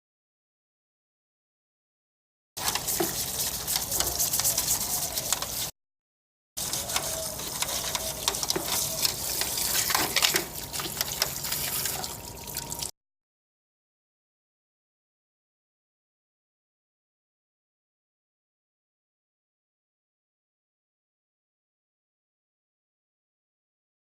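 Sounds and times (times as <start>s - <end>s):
water splashing over plastic: 6.6s - 12.9s.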